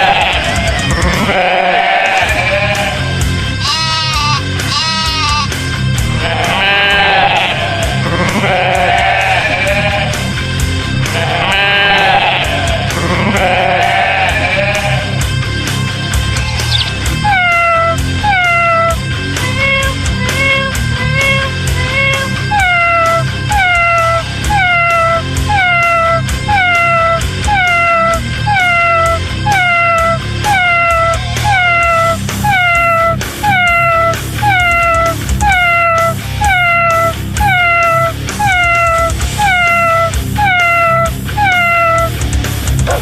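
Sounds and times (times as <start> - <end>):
background music with beat: 0.0 - 43.0
cat meowing: 3.6 - 5.5, 16.5 - 42.2.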